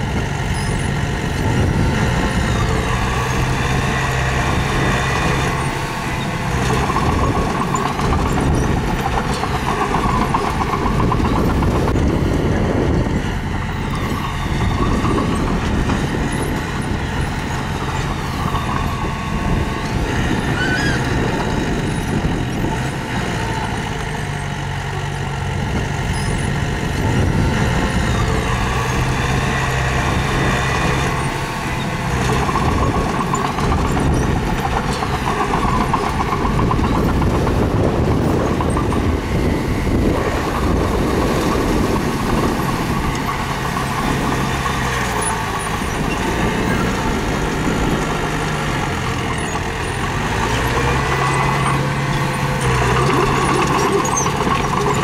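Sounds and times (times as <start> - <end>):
bulldozer diesel engine running: 0.0 - 55.0
faint metallic squeaks: 20.4 - 21.2.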